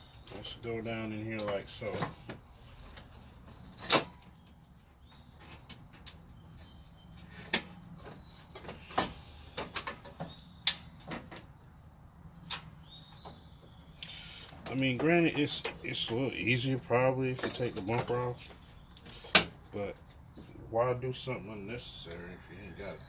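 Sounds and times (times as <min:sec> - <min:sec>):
car parts clicking and knocking: 0:01.3 - 0:11.6, 0:14.5 - 0:16.4, 0:17.1 - 0:20.6.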